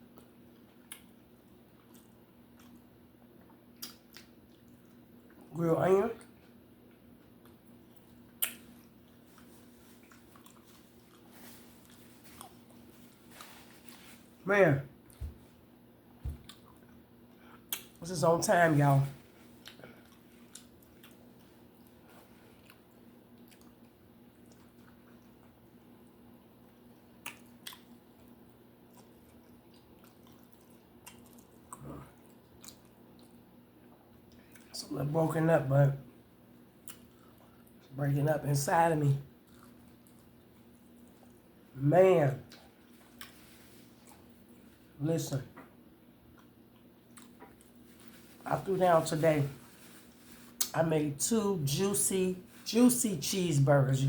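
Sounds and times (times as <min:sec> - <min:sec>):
person chewing food: 0:00.0 - 0:05.5, 0:06.2 - 0:14.4, 0:15.0 - 0:18.0, 0:19.2 - 0:34.8, 0:36.6 - 0:37.9, 0:39.3 - 0:41.7, 0:42.4 - 0:44.9, 0:46.1 - 0:48.4
mouth smacks: 0:08.4 - 0:08.7.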